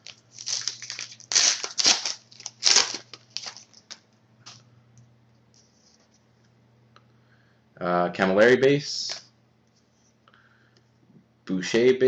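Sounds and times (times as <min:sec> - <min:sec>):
trading cards rustling and scraping: 0:00.0 - 0:04.6.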